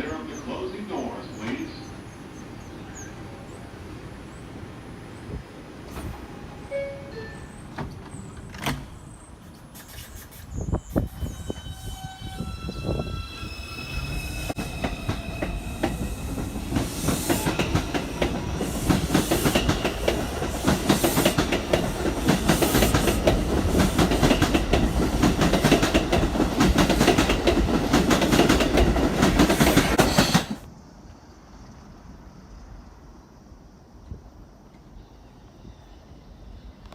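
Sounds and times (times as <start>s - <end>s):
train wheels clacking over rail joints: 14.5s - 30.6s.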